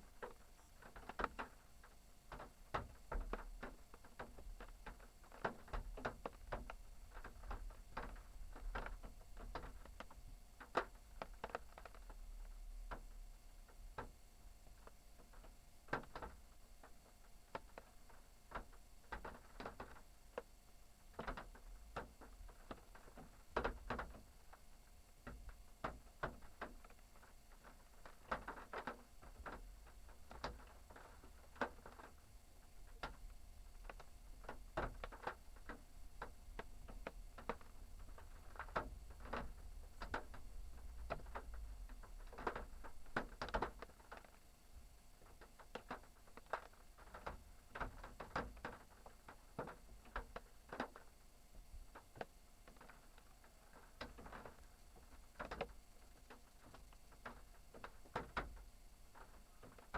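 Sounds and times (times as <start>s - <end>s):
faint low rumble: 29.7s - 45.3s.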